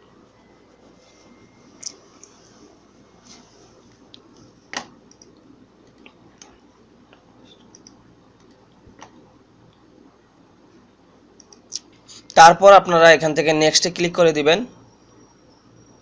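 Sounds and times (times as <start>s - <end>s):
computer mouse clicks: 3.9s - 9.8s, 11.4s - 11.9s.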